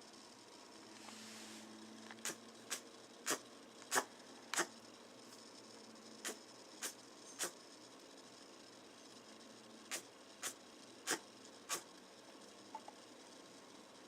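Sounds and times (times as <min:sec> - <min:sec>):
rabbit sneezing: 0:02.2 - 0:04.8, 0:06.2 - 0:07.6, 0:09.9 - 0:11.9.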